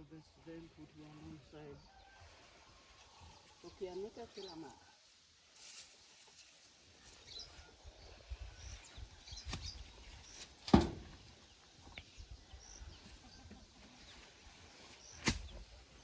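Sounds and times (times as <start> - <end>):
small birds chirping: 0.0 - 16.0
sharp thump: 10.7 - 11.2.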